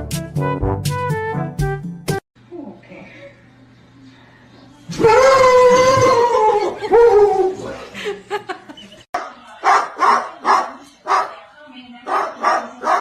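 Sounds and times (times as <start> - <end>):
dog howling: 4.9 - 7.8
dog barking: 9.2 - 11.4, 12.1 - 13.0.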